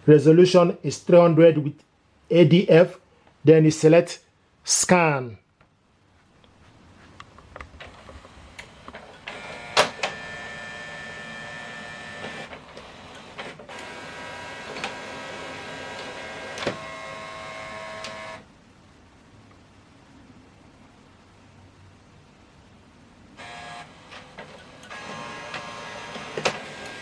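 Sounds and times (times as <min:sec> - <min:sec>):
document feeder motor running: 0:08.6 - 0:18.5, 0:23.4 - 0:27.0.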